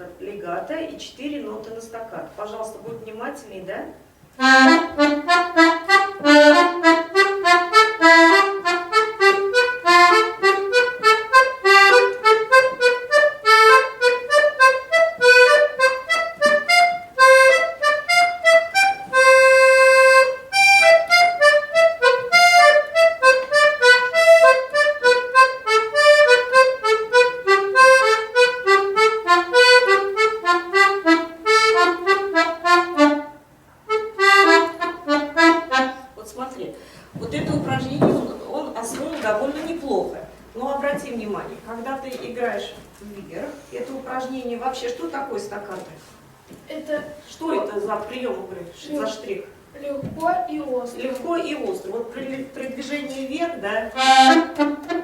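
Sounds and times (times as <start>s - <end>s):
accordion playing short notes: 4.4s - 36.2s, 53.9s - 55.0s.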